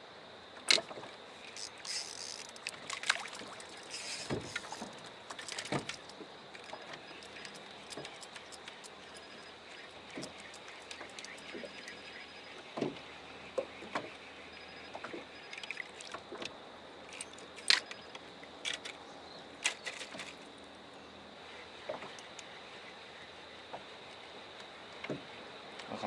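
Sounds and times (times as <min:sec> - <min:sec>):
hiss of water and wind: 0:00.0 - 0:26.0
knocks and clicks on boat: 0:00.6 - 0:14.2, 0:14.8 - 0:19.0, 0:21.8 - 0:22.5, 0:24.6 - 0:26.0.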